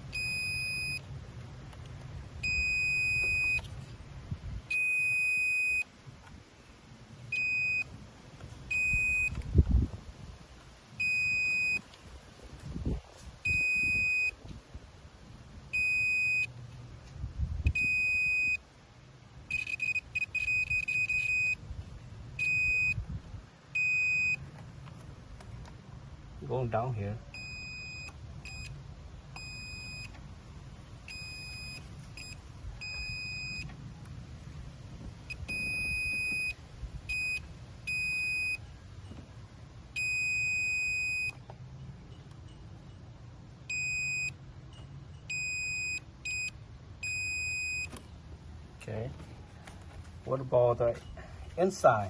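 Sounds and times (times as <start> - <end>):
multimeter continuity beeps: 0.0 - 1.1, 2.4 - 3.7, 4.7 - 5.9, 7.3 - 7.9, 8.7 - 9.4, 11.0 - 11.8, 13.4 - 14.4, 15.7 - 16.5, 17.7 - 18.6, 19.5 - 21.6, 22.4 - 23.0, 23.7 - 24.4, 27.3 - 28.8, 29.4 - 30.2, 31.1 - 33.7, 35.3 - 39.2, 40.0 - 41.4, 43.7 - 48.0.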